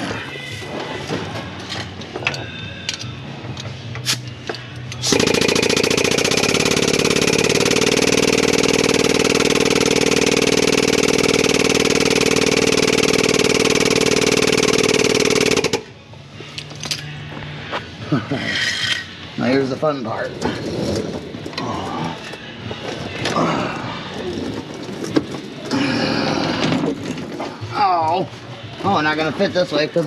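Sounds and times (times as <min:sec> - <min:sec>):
power tool rattling: 0:05.0 - 0:15.8.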